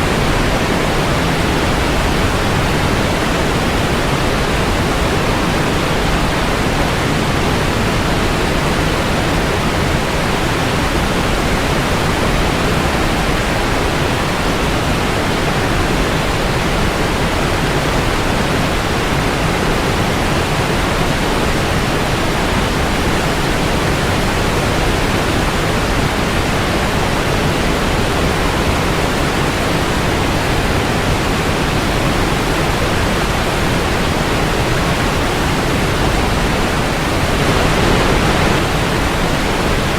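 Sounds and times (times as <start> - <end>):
waterfall rushing: 34.1 - 39.9.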